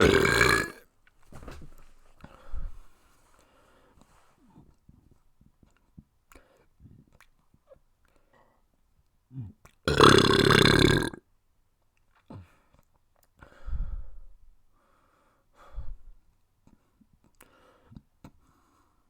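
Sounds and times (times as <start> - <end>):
person burping: 0.0 - 0.8, 9.9 - 11.2.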